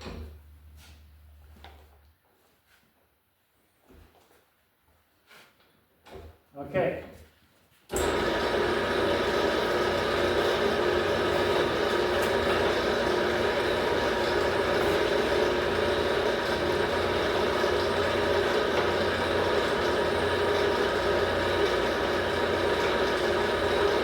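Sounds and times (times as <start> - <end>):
shop machine hum and whine: 7.9 - 24.0.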